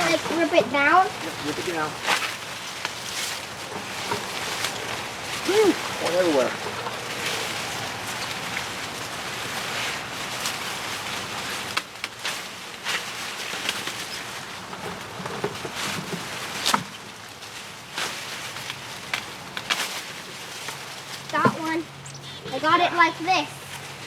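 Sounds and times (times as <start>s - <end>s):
corn stalks rustling: 0.0s - 24.0s
stalks snapping: 17.9s - 21.4s.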